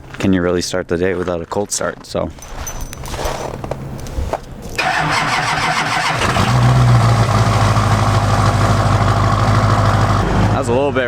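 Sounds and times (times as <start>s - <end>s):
engine cold-starting and idling: 4.8s - 10.7s.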